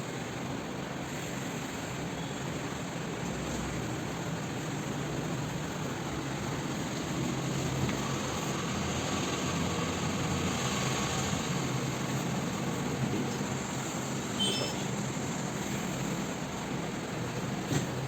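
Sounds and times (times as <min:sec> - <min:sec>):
mechanical hum and hiss: 0:00.0 - 0:18.0.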